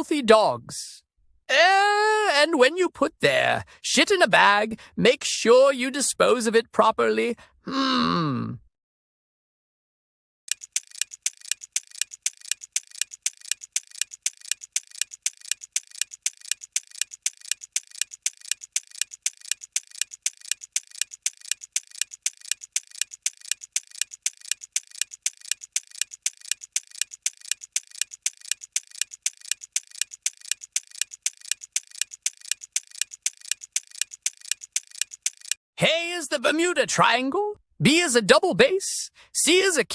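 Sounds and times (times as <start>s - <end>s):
clock ticking: 10.5s - 35.6s.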